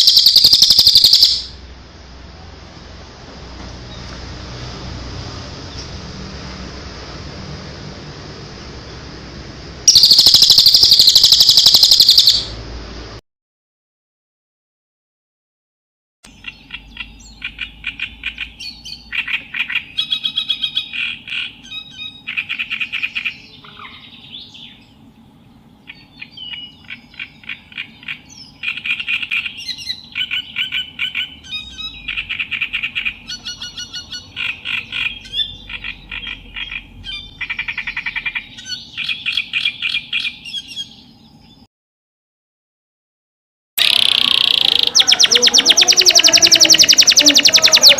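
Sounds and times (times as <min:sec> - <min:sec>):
songbird chattering song: 0:00.0 - 0:01.6, 0:09.9 - 0:12.6, 0:16.3 - 0:41.7, 0:43.8 - 0:47.9
faint steady hum: 0:16.3 - 0:41.7.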